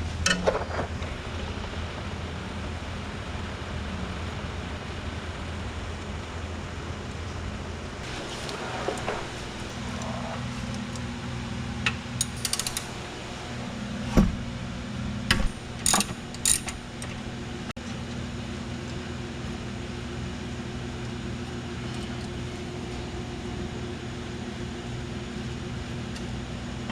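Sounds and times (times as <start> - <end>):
steady background hum: 0.0 - 26.9
metal tools clanking on car parts: 12.2 - 13.5, 15.3 - 17.3.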